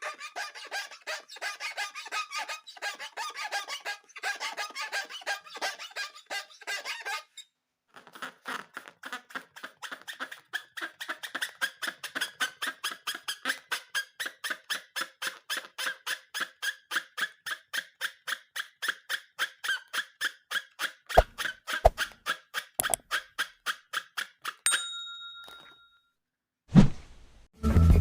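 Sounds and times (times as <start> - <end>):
rubber balloon squeaking: 21.1 - 22.2
click with short ringing tone: 24.7 - 26.0.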